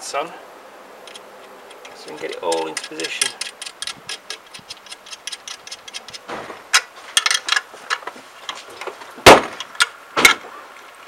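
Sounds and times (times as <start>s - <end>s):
metallic clicking and knocking: 1.0s - 8.0s
sharp loud knock: 9.2s - 9.6s.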